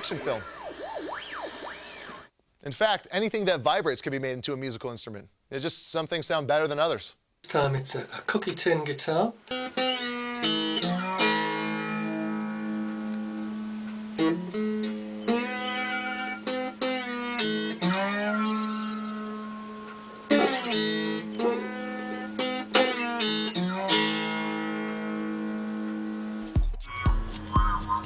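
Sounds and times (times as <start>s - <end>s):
guitar notes and chords plucked: 9.5s - 28.0s.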